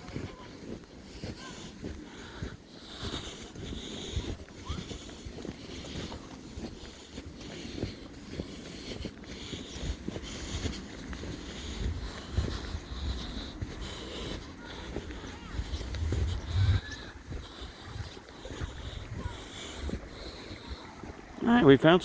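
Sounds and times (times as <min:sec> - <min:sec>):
footsteps crunching through snow: 0:00.0 - 0:21.2
wind rumbling on microphone: 0:09.6 - 0:21.4.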